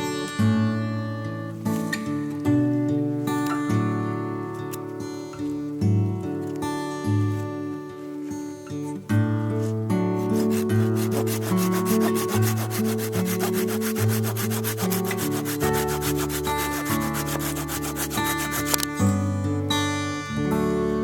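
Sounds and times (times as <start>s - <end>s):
background music: 10.1s - 21.0s
rapid rasping scraping: 10.2s - 19.0s.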